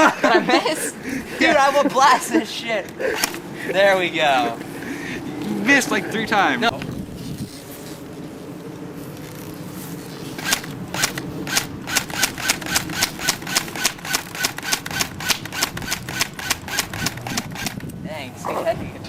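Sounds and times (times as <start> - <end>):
airsoft gun firing rapid shots: 10.4 - 17.8.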